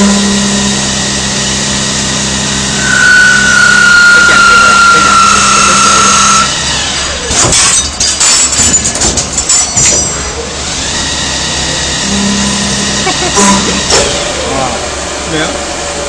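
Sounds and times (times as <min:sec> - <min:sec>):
steady machine hum: 0:00.0 - 0:06.9, 0:11.7 - 0:16.0
lathe whining: 0:00.1 - 0:07.2.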